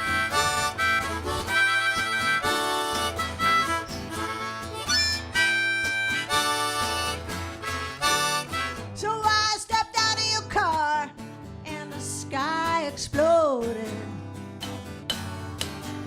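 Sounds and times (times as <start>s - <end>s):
pulsing bass line: 0.0s - 8.8s
melody of held notes: 0.0s - 8.9s.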